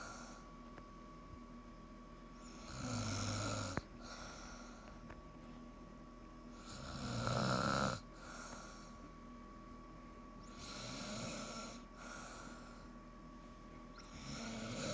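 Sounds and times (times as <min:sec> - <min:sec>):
woman snoring: 0:02.5 - 0:04.6, 0:06.6 - 0:08.5, 0:10.5 - 0:12.6, 0:14.0 - 0:14.9.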